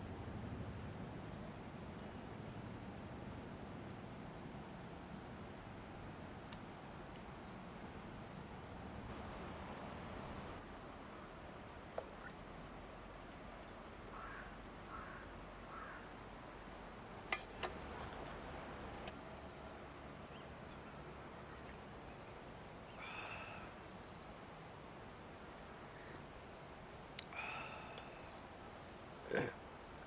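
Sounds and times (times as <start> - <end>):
steady low hiss: 8.9 - 10.6, 16.6 - 19.2
crow cawing: 14.2 - 16.0.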